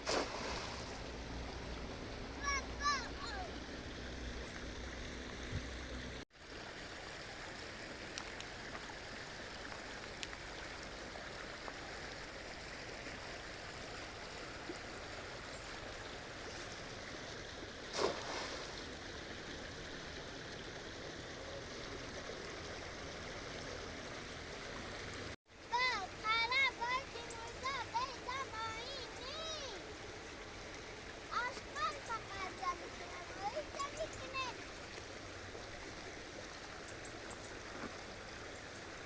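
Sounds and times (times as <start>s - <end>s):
river water rushing: 0.0s - 6.2s.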